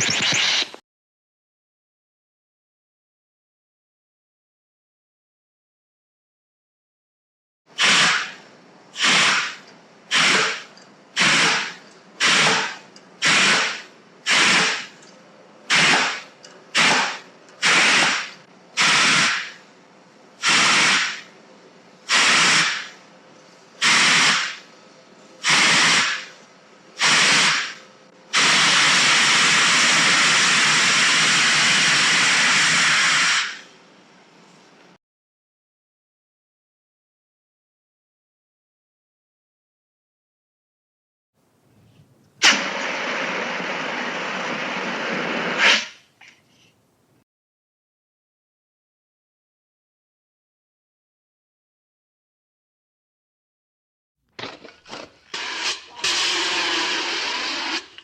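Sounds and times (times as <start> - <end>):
short sharp hisses: 7.8 - 8.4, 9.0 - 15.0, 20.4 - 21.3, 22.1 - 23.0, 23.8 - 24.7, 25.4 - 26.4, 27.0 - 29.8, 32.6 - 33.7, 45.5 - 46.8.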